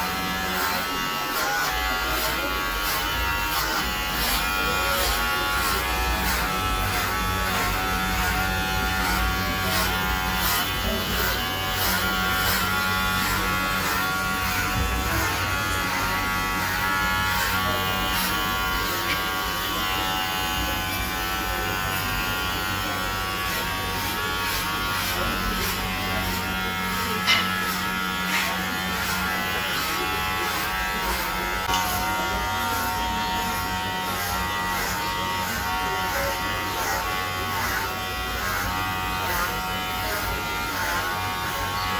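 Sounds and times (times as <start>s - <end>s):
electric hair clippers buzzing: 0.0s - 41.9s.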